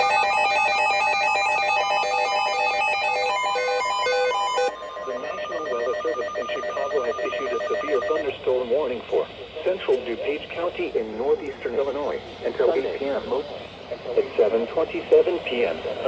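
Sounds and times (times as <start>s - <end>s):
electronic alert beeping tones: 3.4s - 8.2s
person reading a warning: 5.0s - 9.0s.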